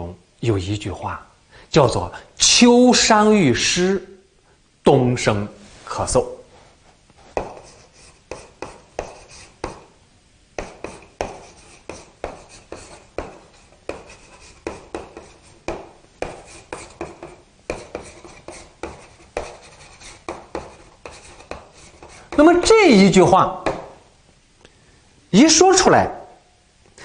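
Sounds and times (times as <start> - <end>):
writing taps and scratches on board: 7.3 - 9.9, 10.6 - 22.4.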